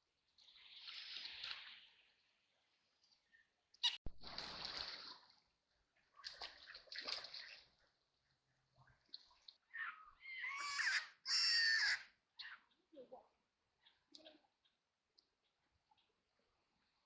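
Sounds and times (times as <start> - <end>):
ducks splashing in water: 4.2 - 8.0.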